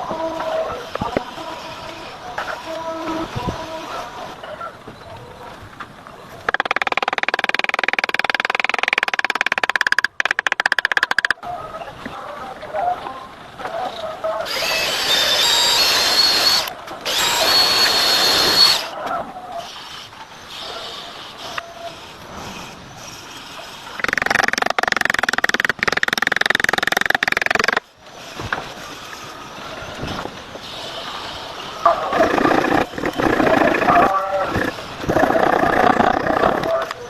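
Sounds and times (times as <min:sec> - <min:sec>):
electric power tool whining: 0:14.5 - 0:18.9.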